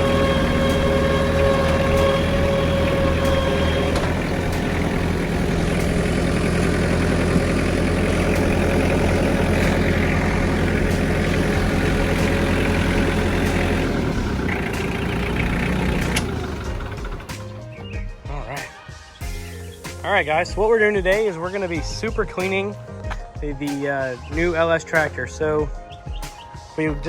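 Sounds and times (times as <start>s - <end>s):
tractor diesel engine running: 0.0s - 18.1s.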